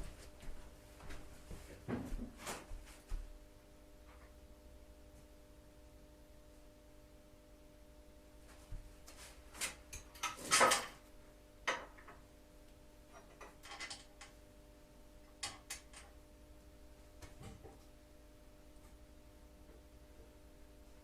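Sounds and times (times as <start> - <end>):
faint steady hum: 0.0 - 21.0
tools and parts clinking: 10.1 - 11.0, 13.1 - 14.4.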